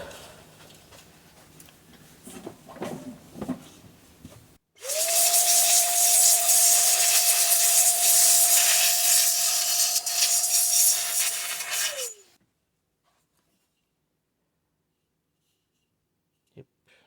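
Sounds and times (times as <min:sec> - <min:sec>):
compressed air hissing: 0:04.8 - 0:12.3.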